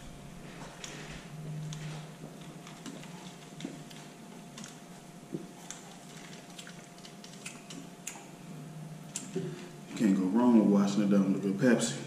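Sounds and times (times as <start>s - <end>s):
low electrical hum: 0.0s - 12.0s
close chewing and mouth sounds: 1.6s - 8.4s.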